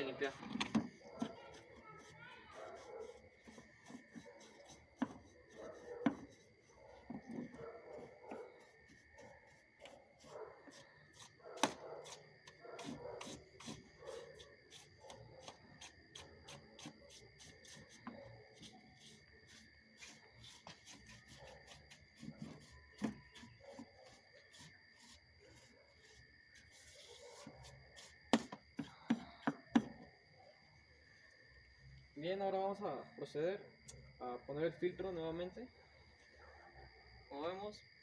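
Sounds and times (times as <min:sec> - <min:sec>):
paintbrush scrubbing plastic filter: 0:00.2 - 0:28.9.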